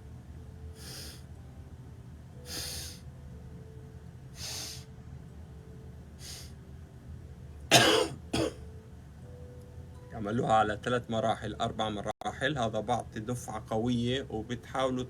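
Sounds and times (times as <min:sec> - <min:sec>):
man inhaling sharply: 0:00.8 - 0:01.2.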